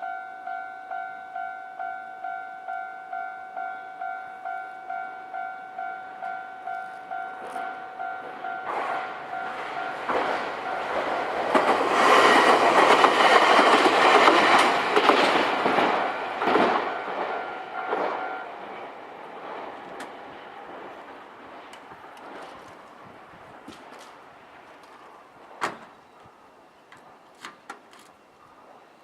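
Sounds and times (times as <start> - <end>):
level crossing warning bell: 0.0 - 11.6, 15.7 - 19.1
train wheels on rails: 6.1 - 29.0.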